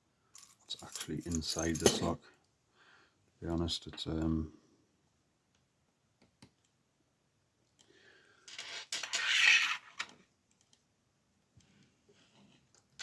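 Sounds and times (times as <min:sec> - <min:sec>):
clattering metal scrape: 0:00.8 - 0:02.2.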